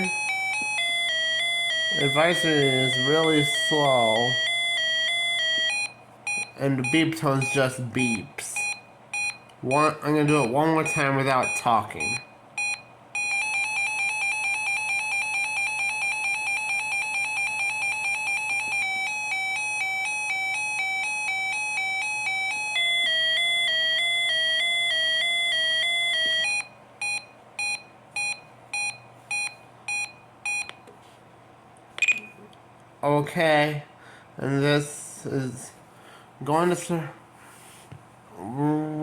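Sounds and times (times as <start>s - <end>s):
two-tone electronic warble: 0.0s - 26.8s
electronic beeps: 32.0s - 32.4s.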